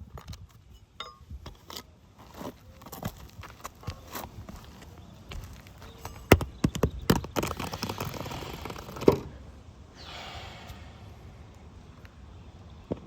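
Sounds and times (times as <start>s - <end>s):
knocks and scuffs on shingle roof: 1.5s - 9.2s.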